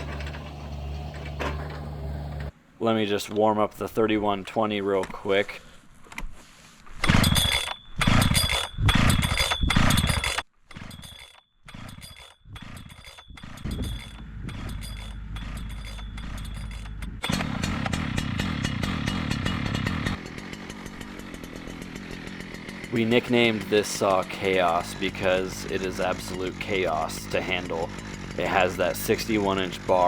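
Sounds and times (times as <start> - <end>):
chainsaw engine revving: 0.0 - 2.5, 12.1 - 30.0.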